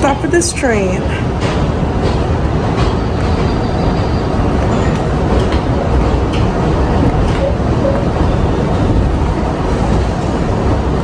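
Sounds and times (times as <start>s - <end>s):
subway wheels rumbling on rails: 0.0s - 11.0s.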